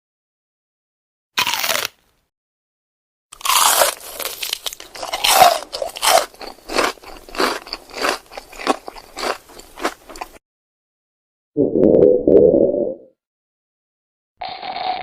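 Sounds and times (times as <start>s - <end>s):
person chewing crisp food: 1.4s - 2.0s, 3.4s - 10.4s.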